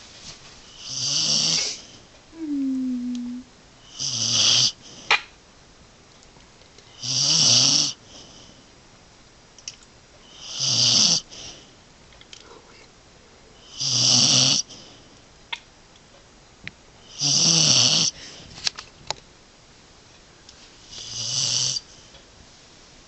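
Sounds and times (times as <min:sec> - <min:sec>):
dog snoring: 0:00.7 - 0:01.8, 0:02.4 - 0:04.8, 0:07.0 - 0:08.5, 0:10.3 - 0:11.6, 0:13.7 - 0:14.9, 0:17.1 - 0:18.2, 0:21.0 - 0:21.9
dog whining: 0:02.4 - 0:03.5.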